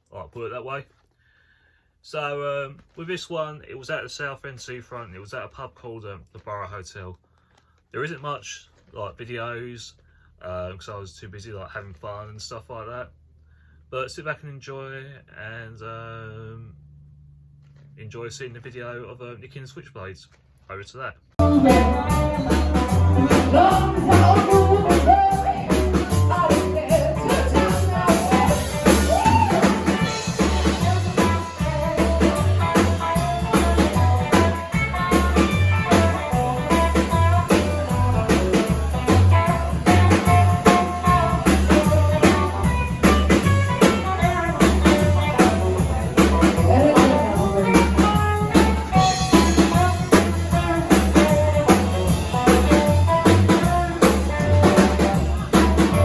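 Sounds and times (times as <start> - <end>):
person singing: 21.4 - 34.5, 43.8 - 51.8
drum kit beat: 21.4 - 56.0
guitar: 21.4 - 56.0
rock band playing live: 21.4 - 56.0.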